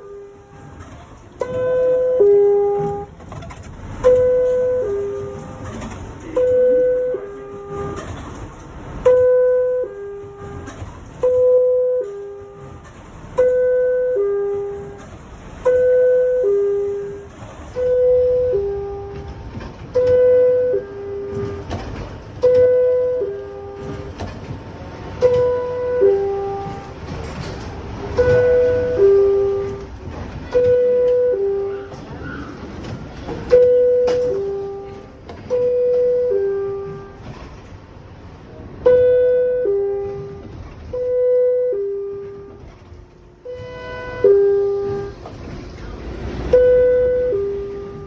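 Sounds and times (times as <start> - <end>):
low rumble of train: 0.0 - 48.0
subway door chime: 0.0 - 48.0.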